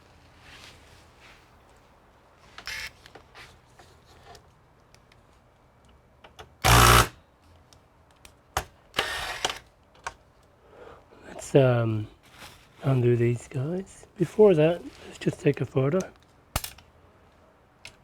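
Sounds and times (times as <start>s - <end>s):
scraping rustle: 12.2s - 13.1s.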